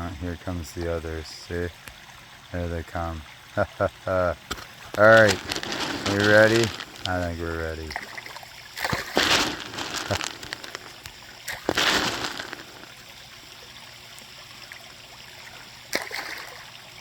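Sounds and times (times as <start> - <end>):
small waterfall trickling: 0.0 - 17.0
water splashing in pond: 1.6 - 17.0.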